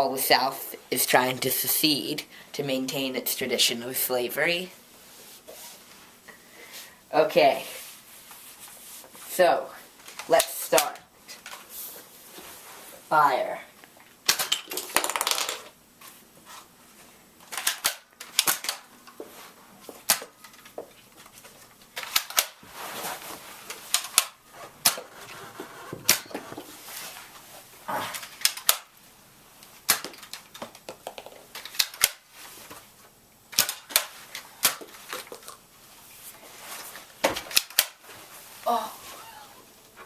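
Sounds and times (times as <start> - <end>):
darts knocking plastic toys: 14.2 - 15.7, 17.4 - 18.9, 19.9 - 20.8, 28.2 - 28.9, 29.8 - 32.3, 33.5 - 35.6.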